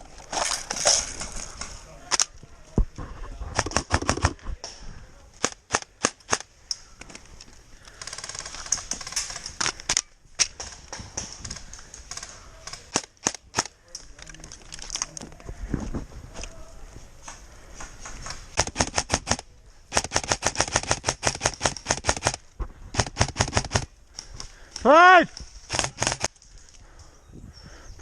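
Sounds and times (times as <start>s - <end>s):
airsoft guns firing: 3.6s - 4.4s, 18.5s - 23.9s, 25.7s - 26.3s.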